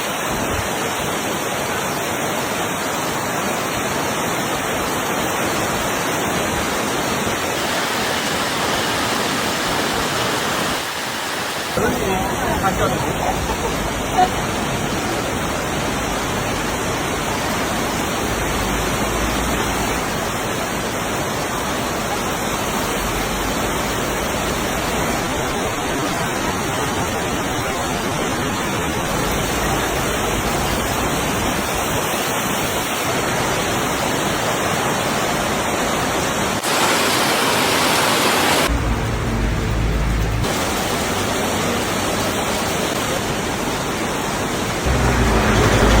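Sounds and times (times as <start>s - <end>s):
heavy rain downpour: 0.0s - 46.0s
low rumble: 38.7s - 40.4s.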